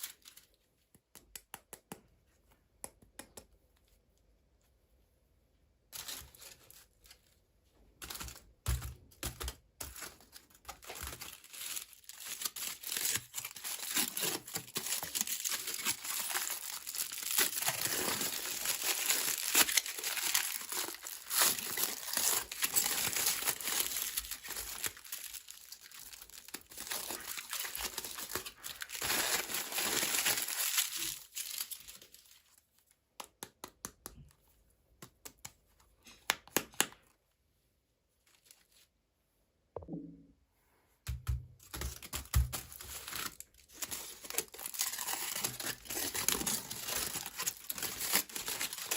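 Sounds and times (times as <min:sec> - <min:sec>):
packaging crinkling and tearing: 0:08.0 - 0:32.9, 0:41.7 - 0:48.9.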